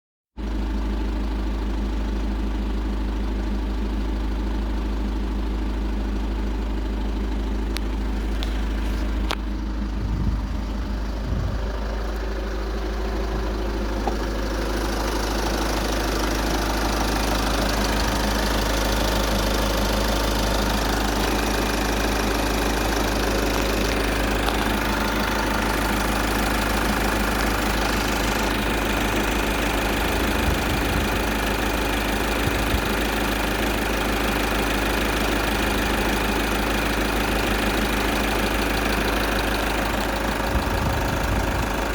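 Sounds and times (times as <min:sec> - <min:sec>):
diesel engine idling: 0:00.4 - 0:41.9.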